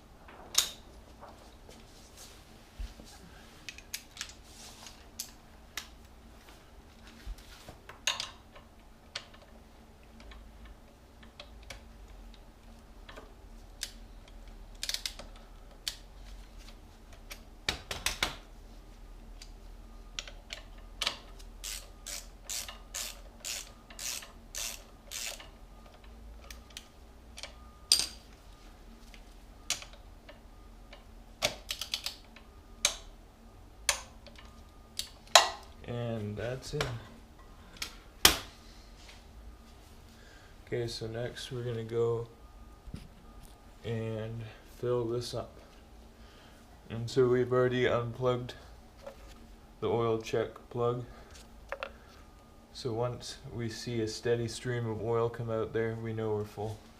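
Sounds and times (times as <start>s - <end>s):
ratchet wrench clicking: 21.6s - 25.5s.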